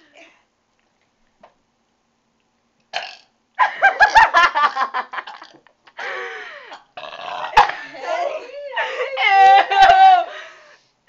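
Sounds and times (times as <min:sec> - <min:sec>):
girl burping loudly: 0:03.0 - 0:03.3, 0:06.8 - 0:10.2.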